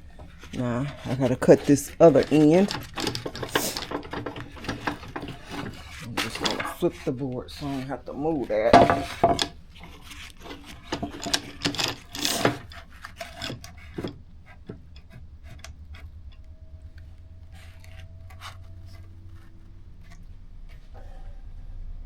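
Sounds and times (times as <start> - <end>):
wooden board scraping and knocking: 0.0 - 16.4.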